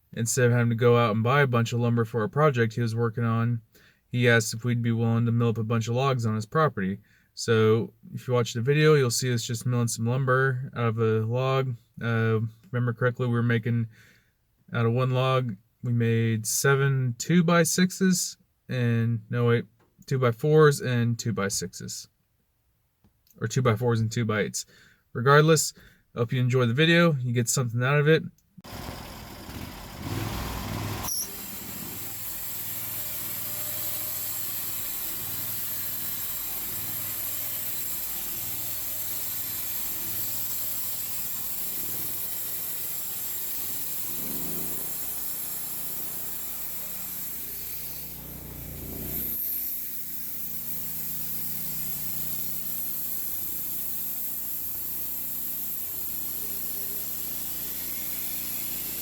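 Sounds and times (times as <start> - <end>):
saw blade whine: 28.6 - 59.0
sawmill engine running: 28.6 - 59.0.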